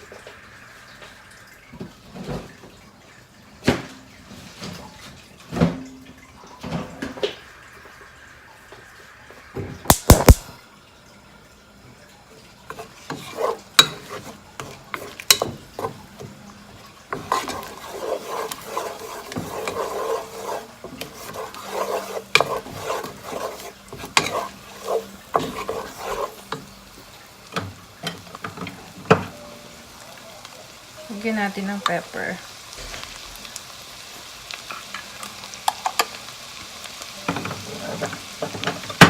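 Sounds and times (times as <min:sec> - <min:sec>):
utensil scraping a pan: 0:12.7 - 0:26.8.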